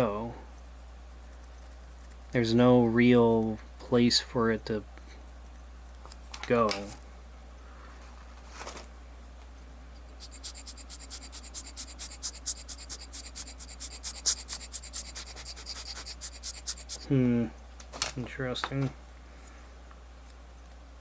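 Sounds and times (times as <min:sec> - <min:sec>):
sharp scratchy clicks of watch parts: 0:10.2 - 0:17.1.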